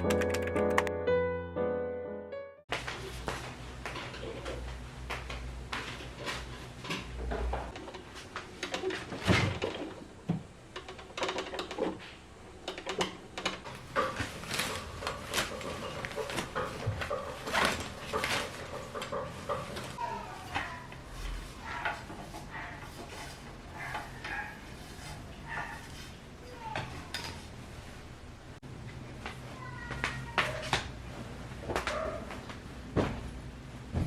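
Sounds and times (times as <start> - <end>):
objects clicking and knocking: 5.2 - 20.7.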